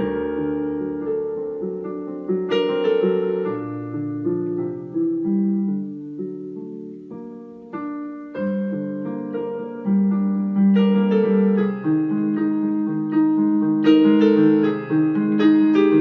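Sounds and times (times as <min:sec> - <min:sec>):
solo piano melody: 0:00.0 - 0:16.0.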